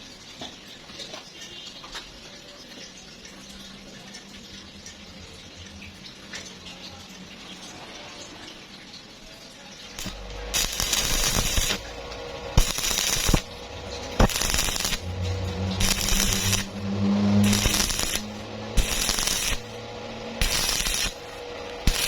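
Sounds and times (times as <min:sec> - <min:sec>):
electric arc welding crackle: 0:10.0 - 0:22.0
low welder hum: 0:10.0 - 0:22.0.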